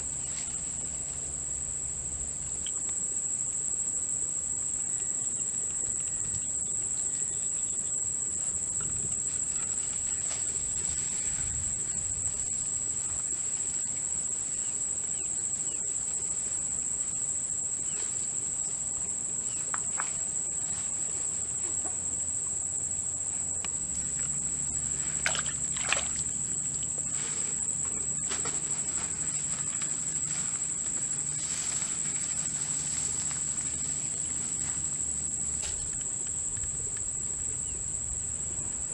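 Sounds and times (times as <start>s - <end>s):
crickets trilling: 0.0s - 38.9s.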